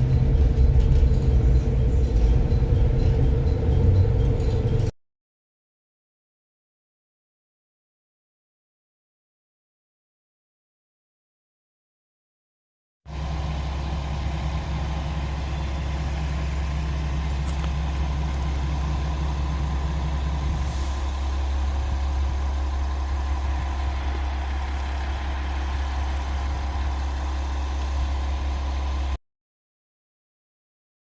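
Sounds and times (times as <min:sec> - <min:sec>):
diesel engine idling: 0:00.0 - 0:04.9, 0:13.1 - 0:29.2.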